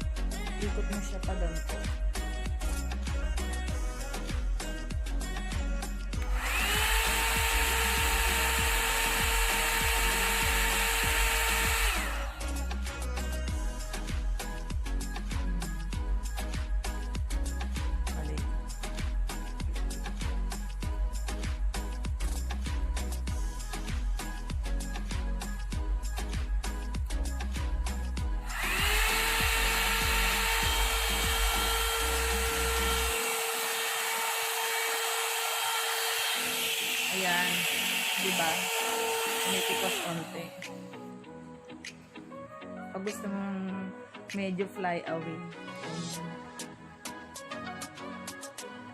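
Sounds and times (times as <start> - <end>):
background music: 0.0 - 48.9
hair dryer running: 6.2 - 13.1, 28.3 - 40.9.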